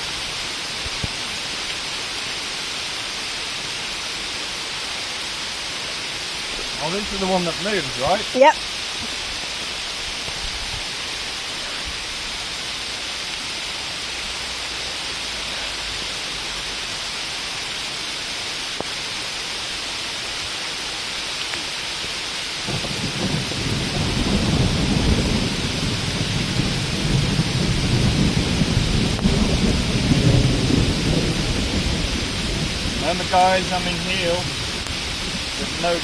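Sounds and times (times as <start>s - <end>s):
heavy rain hissing: 0.0s - 36.0s
low rumble of thunder: 22.6s - 36.0s.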